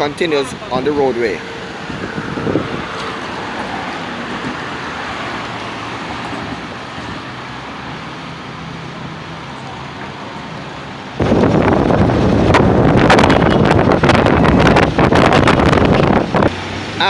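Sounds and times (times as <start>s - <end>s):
tyre noise on road: 0.0s - 17.0s.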